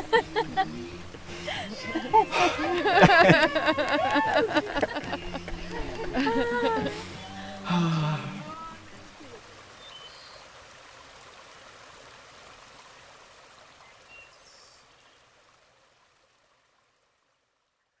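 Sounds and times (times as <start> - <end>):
stream water rushing: 0.0 - 14.2.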